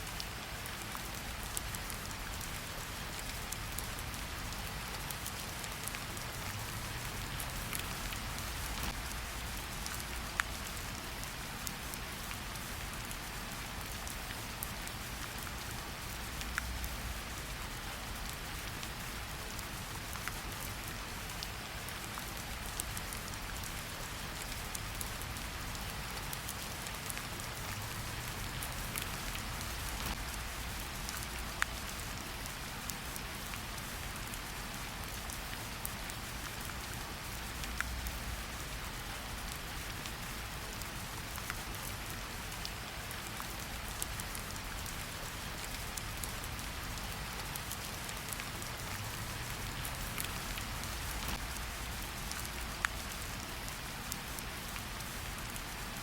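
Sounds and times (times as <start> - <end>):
steady rain in forest: 0.0 - 56.0
raindrops ticking: 5.2 - 11.3, 20.0 - 32.4, 33.0 - 42.0, 42.6 - 55.6.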